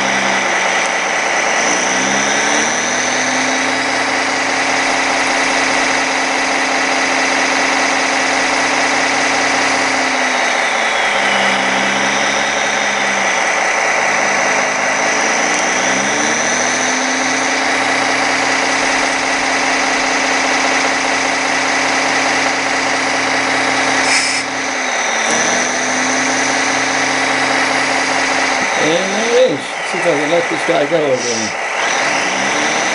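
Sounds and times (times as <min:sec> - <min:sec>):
simulated diesel engine from speaker: 0:00.0 - 0:32.9.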